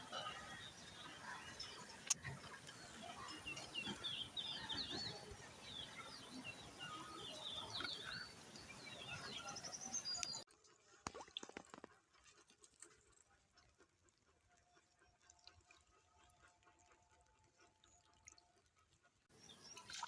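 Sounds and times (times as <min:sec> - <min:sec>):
small birds chirping: 0:00.0 - 0:10.4, 0:19.4 - 0:20.0
steady outdoor hiss: 0:00.0 - 0:10.4.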